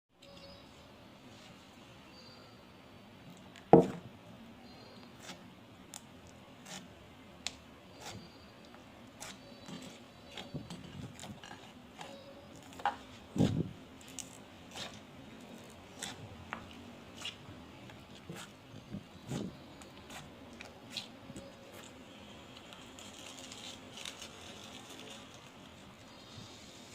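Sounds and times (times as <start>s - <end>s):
crunchy slime crackling: 5.2s - 21.1s, 21.7s - 25.9s.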